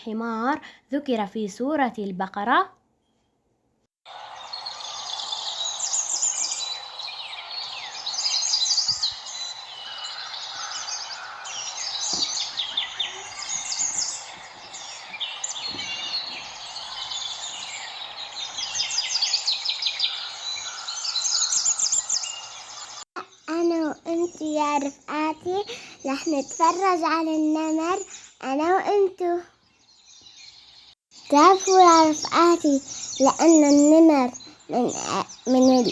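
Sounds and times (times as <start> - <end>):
background hiss: 4.1 - 23.0
small birds chirping: 4.1 - 35.9.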